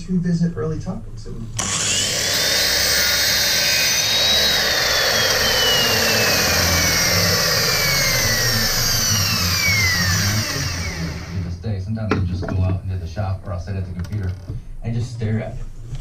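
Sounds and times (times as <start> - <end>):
power tool whining: 1.5 - 11.6.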